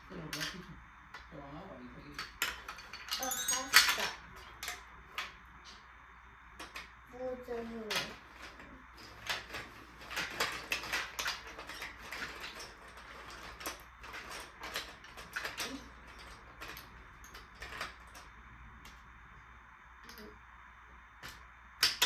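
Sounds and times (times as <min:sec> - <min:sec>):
marbles clattering down plastic track: 0:02.2 - 0:05.3, 0:07.6 - 0:18.3.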